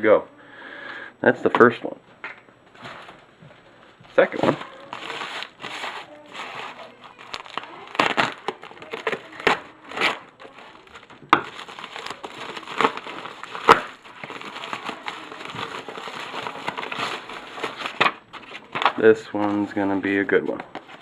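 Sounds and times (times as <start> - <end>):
packaging crinkling and rustling: 4.1 - 21.0
packaging snaps: 4.5 - 19.0.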